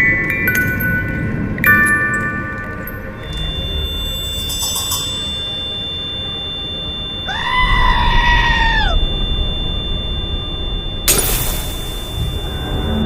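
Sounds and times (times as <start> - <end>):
thin high steady tone: 0.0 - 13.0
low rumbling drone: 3.1 - 13.0
wailing scream: 7.2 - 9.9.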